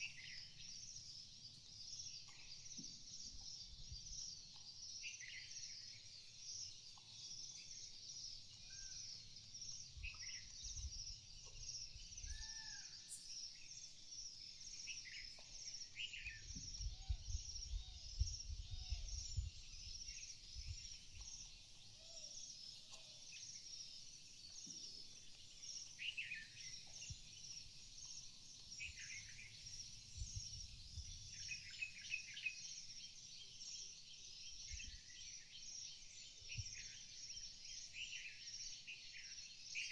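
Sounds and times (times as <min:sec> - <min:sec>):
birds chirping and whistling: 0:00.0 - 0:39.9
low rumbling wind gusts: 0:16.4 - 0:20.8.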